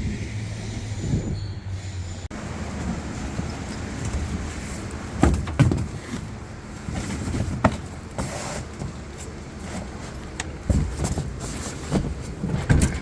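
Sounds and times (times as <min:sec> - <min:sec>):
low vehicle rumble: 0:00.0 - 0:13.0
sharp knocks and thumps: 0:05.2 - 0:06.2.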